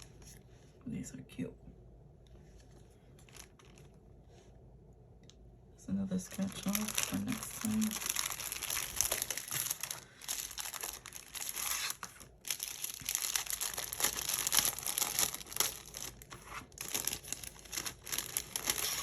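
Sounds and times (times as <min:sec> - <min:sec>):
plastic and paper packaging crinkling: 0:02.6 - 0:04.0, 0:06.2 - 0:19.0.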